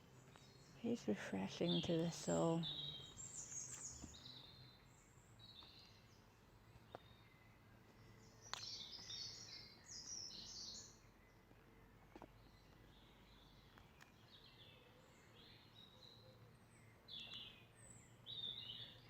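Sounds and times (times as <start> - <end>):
songbirds twittering: 0.0 - 19.0
small sharp click: 8.5 - 8.7.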